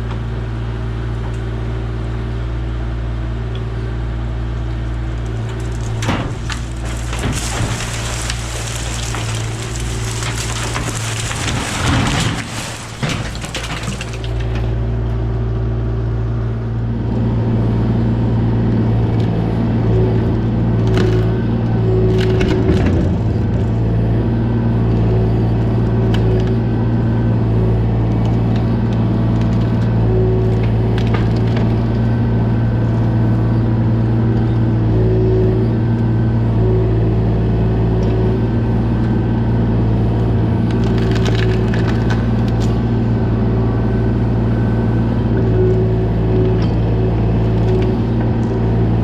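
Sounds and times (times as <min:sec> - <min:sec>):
excavator diesel engine running: 0:00.1 - 0:49.0
tree roots cracking and splintering: 0:05.2 - 0:14.9, 0:39.7 - 0:45.4.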